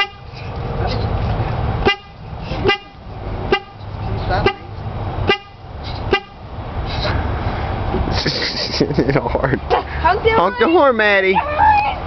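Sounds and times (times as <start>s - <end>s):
car horn honks: 0.0s - 0.3s, 1.8s - 6.4s.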